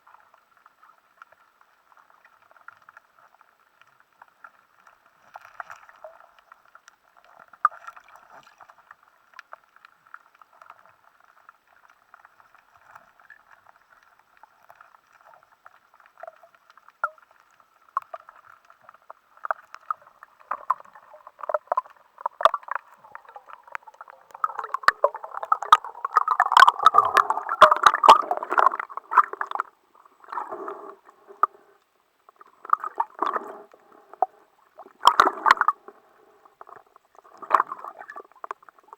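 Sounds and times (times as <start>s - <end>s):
bubbling churning water: 19.8s - 38.9s
muffled underwater gurgling: 19.9s - 38.9s.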